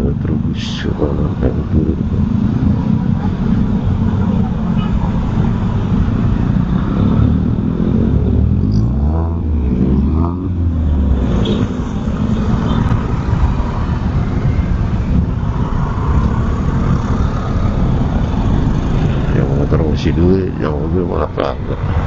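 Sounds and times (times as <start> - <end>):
wind noise on microphone: 4.8 - 19.4.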